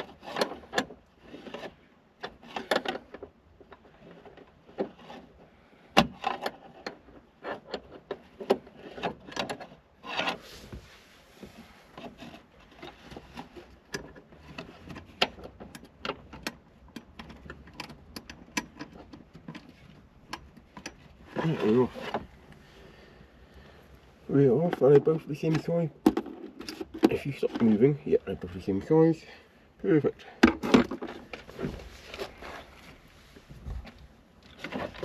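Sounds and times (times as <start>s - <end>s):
hand tools clicking and scraping metal: 0.0s - 10.6s, 11.9s - 23.0s, 23.6s - 29.3s.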